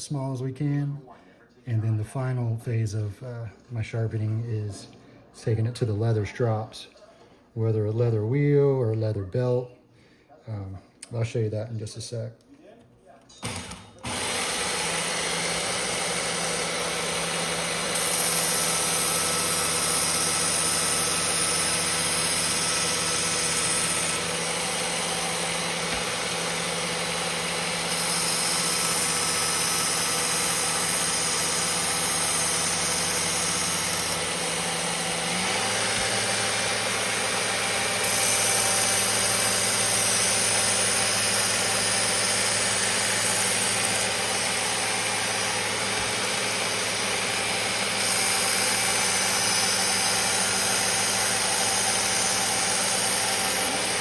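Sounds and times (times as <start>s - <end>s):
belt grinder motor hum: 13.4s - 54.0s.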